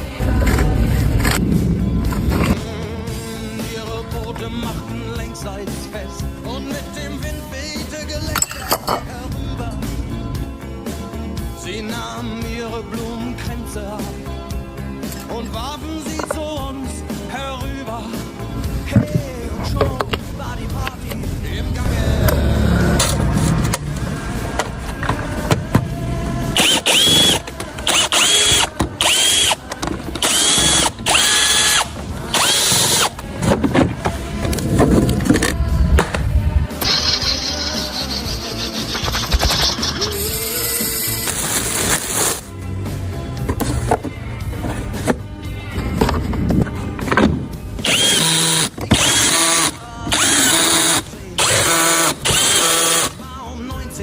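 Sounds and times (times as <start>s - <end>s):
tools clattering: 8.2s - 9.2s, 15.1s - 16.6s
power tool whining: 26.5s - 33.2s, 47.8s - 53.2s.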